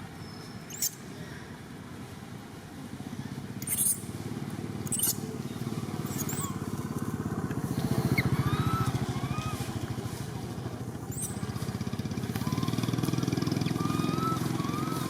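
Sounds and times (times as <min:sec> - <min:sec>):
small engine running: 0:03.6 - 0:15.0.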